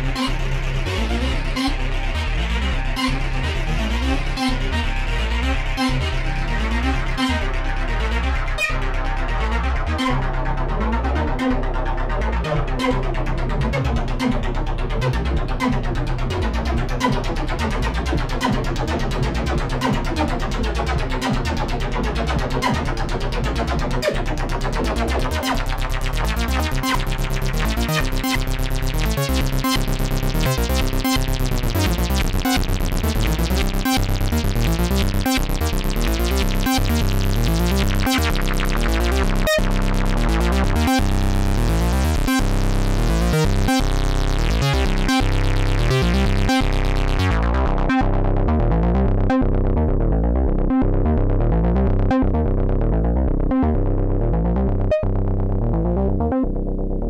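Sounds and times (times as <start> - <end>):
synthesizer repeating short notes: 25.0 - 48.2.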